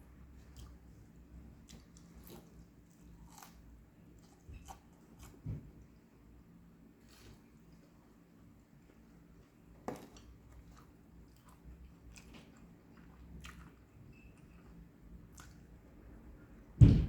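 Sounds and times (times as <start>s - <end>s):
chewing crispy fried chicken: 0.0s - 5.4s, 7.0s - 16.0s
loud thump: 16.8s - 17.0s.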